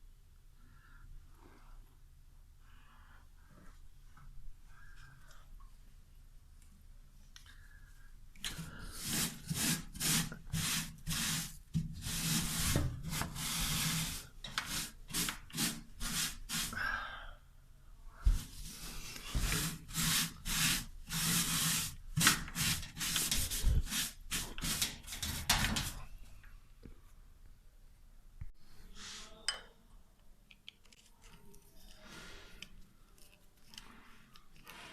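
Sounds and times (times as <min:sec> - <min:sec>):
hand scrubbing hard surface: 0:08.5 - 0:16.8, 0:18.2 - 0:26.1.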